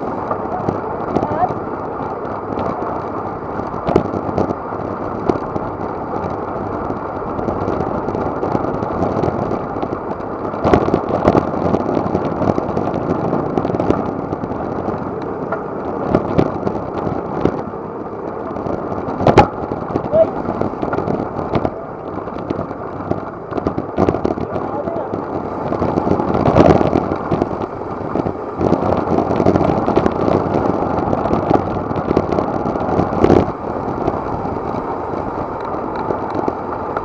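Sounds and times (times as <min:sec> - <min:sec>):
bicycle knocks and rattles: 0:00.0 - 0:37.0
wind and road noise: 0:00.0 - 0:37.0.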